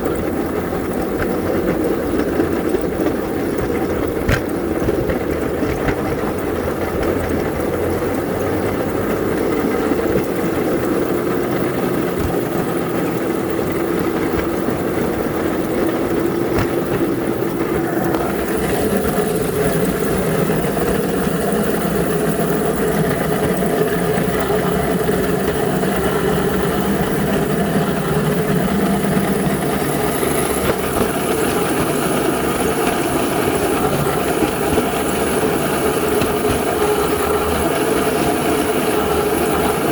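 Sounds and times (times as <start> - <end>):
rail vehicle engine humming: 0.0 - 39.9.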